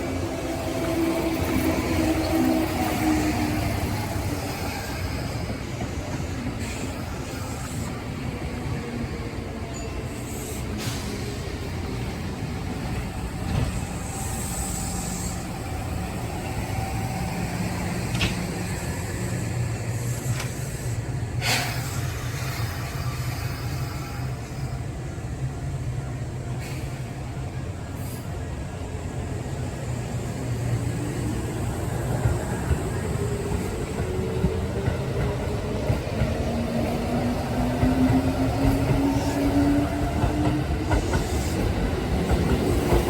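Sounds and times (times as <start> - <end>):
electric train low hum: 0.0 - 43.0
short hiss of air: 19.9 - 24.1.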